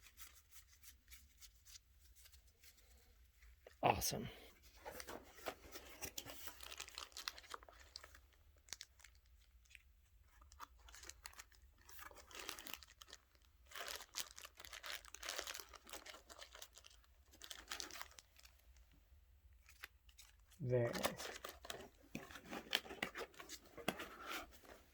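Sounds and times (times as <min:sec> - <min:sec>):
packaging crinkling and tearing: 0:05.0 - 0:18.6, 0:19.6 - 0:24.9.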